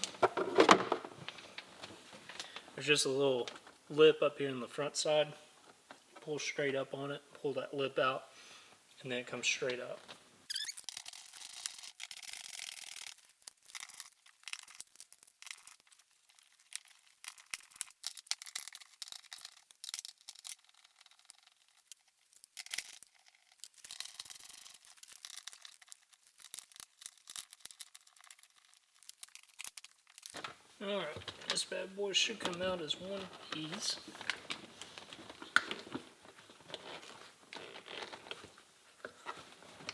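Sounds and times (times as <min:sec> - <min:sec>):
plastic clicks and crackles: 0:10.5 - 0:31.7, 0:32.3 - 0:39.9
plastic trim rustling and scraping: 0:15.4 - 0:39.9.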